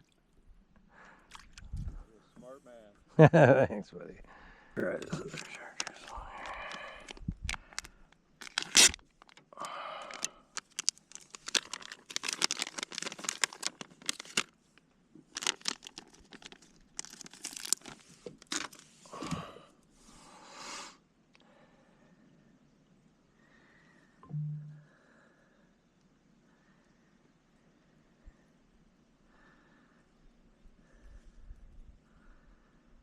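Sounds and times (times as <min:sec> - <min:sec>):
plastic package crinkling and tearing: 0:05.0 - 0:14.6, 0:15.2 - 0:18.9.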